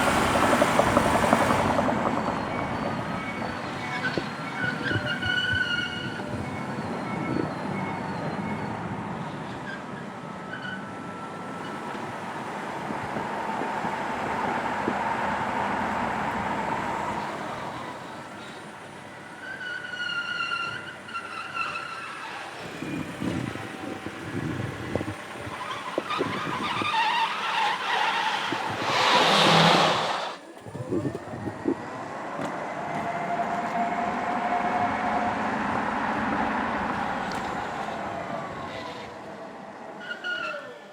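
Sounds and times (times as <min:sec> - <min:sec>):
tyres squealing on concrete floor: 0:02.4 - 0:08.7, 0:19.4 - 0:22.8, 0:25.4 - 0:30.6
harsh tyre skid: 0:24.4 - 0:30.5.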